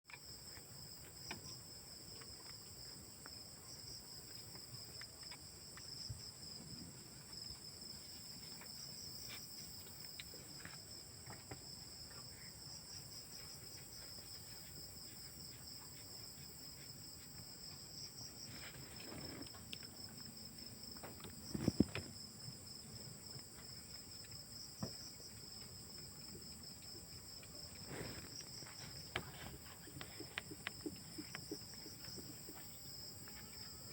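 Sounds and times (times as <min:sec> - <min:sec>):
insects chirring: 0:00.1 - 0:33.9.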